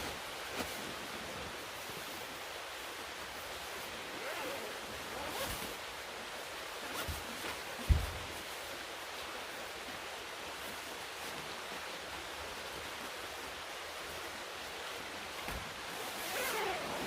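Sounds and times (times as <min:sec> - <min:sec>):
river rushing: 0:00.0 - 0:17.0
dull thump: 0:07.8 - 0:08.3.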